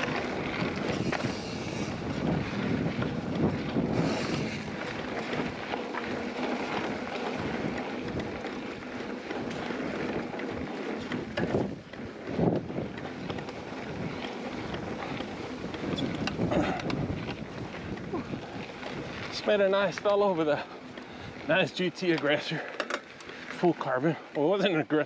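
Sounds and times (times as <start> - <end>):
wind on microphone: 0.0 - 5.7, 9.5 - 19.4
bike clicks and knocks: 0.0 - 24.7
mountain bike rolling on dirt: 0.0 - 25.0.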